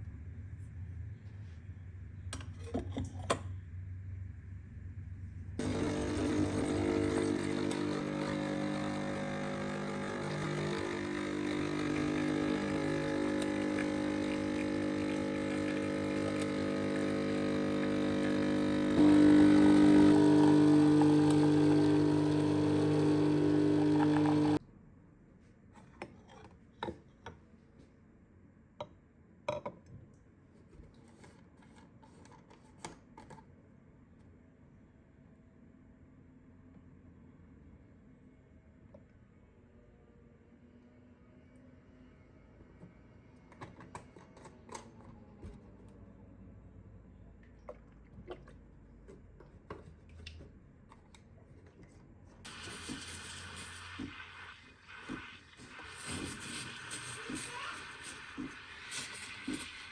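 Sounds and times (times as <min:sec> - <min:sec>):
electric motor appliance running: 0:05.6 - 0:24.6, 0:52.5 - 0:59.9.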